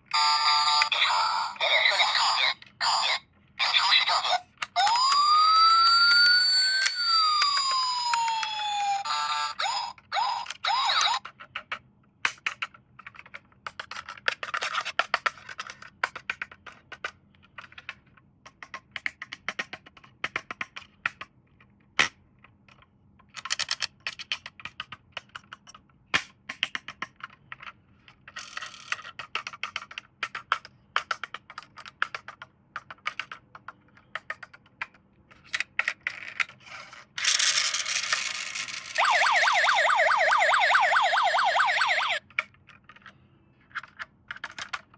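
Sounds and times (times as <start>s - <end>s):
toy police siren: 0.1s - 11.3s, 37.4s - 42.2s.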